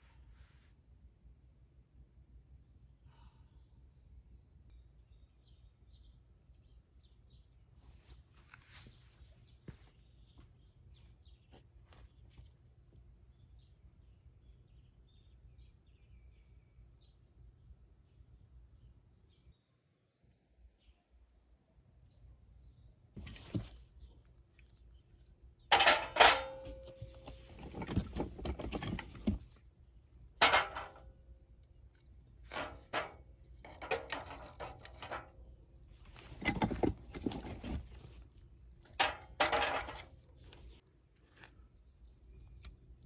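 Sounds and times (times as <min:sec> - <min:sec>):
camping gear knocking and clinking: 0:23.2 - 0:23.8, 0:25.7 - 0:29.6, 0:30.3 - 0:31.3, 0:32.2 - 0:40.8.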